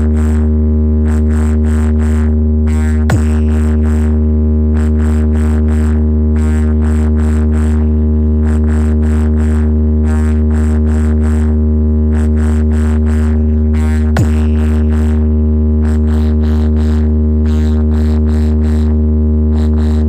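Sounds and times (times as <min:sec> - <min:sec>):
deep bass tone: 0:00.0 - 0:20.0
short percussive hits: 0:03.1 - 0:03.7, 0:14.0 - 0:15.0.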